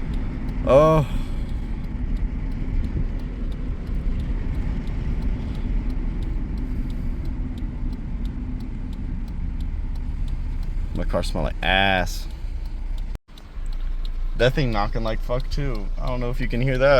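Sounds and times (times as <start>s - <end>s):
car engine rumbling: 0.0s - 16.9s
engine ticking: 0.0s - 16.9s.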